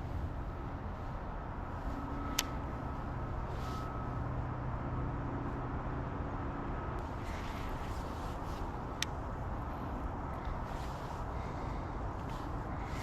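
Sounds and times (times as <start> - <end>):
faint engine hum: 0.0 - 13.0.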